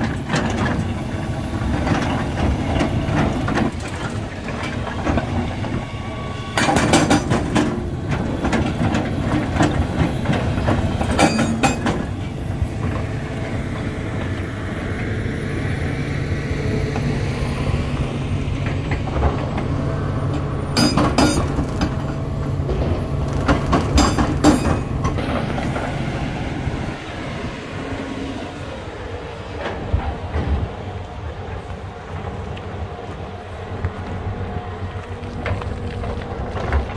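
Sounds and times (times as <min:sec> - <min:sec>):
excavator diesel engine running: 0:00.0 - 0:36.9
loud metal clanking and rattling: 0:06.6 - 0:12.2, 0:20.7 - 0:25.9.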